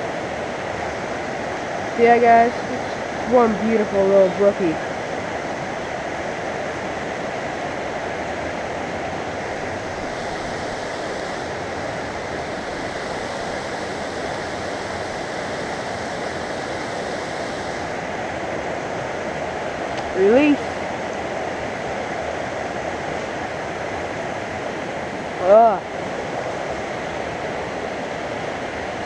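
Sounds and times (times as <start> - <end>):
stream rushing over rocks: 0.0 - 29.0.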